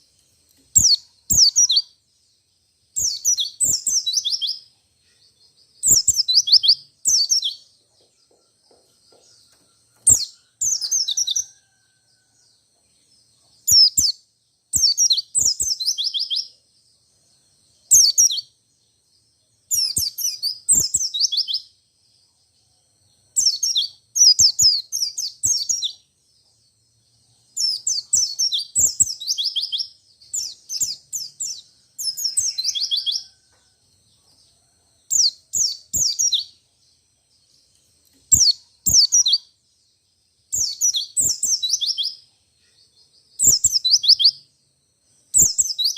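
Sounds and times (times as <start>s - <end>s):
bird singing rapid high chirps: 0.6s - 8.3s, 9.2s - 11.6s, 13.6s - 16.6s, 17.8s - 21.8s, 23.2s - 26.2s, 27.5s - 33.3s, 35.1s - 36.7s, 38.3s - 39.6s, 40.5s - 44.5s, 45.2s - 45.9s.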